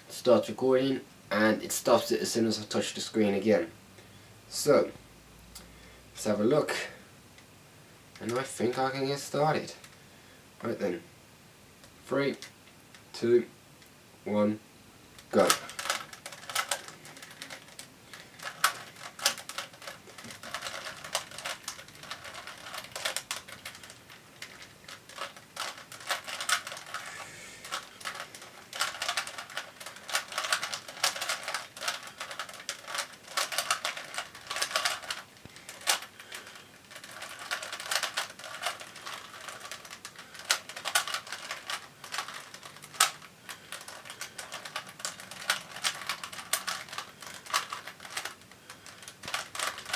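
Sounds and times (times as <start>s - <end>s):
puzzle cube plastic clicking: 15.2s - 49.9s.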